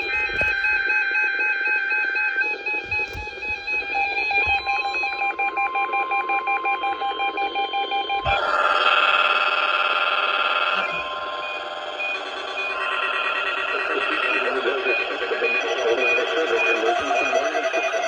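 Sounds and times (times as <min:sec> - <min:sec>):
radio hiss: 0:00.0 - 0:00.9, 0:02.7 - 0:05.4, 0:08.2 - 0:18.0
electronic radio tones: 0:00.0 - 0:18.0.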